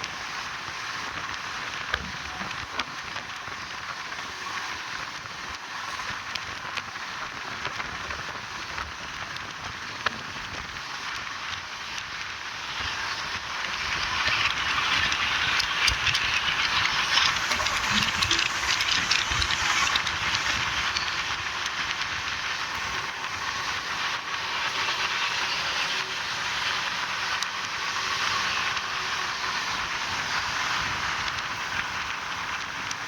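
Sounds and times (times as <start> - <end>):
train running on track: 0.0 - 33.0
track clicks and thumps: 14.2 - 22.0.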